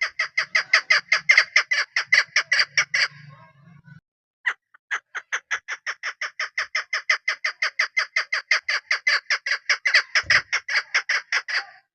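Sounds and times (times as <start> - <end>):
partridge calling sharp notes: 4.5 - 11.8.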